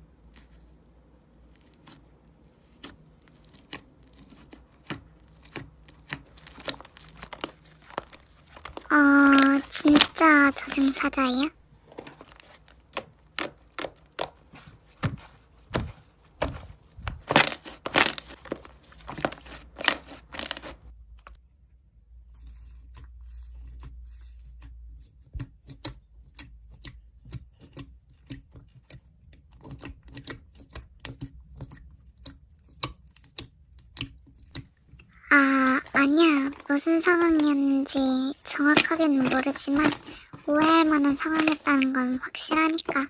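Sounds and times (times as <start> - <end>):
slime popping and crackling: 2.8 - 11.3, 12.2 - 14.6, 16.4 - 20.8, 35.2 - 43.0.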